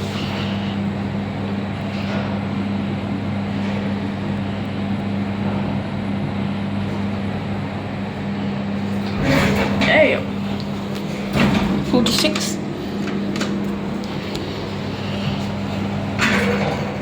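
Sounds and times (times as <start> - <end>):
lift hum: 0.0 - 17.0.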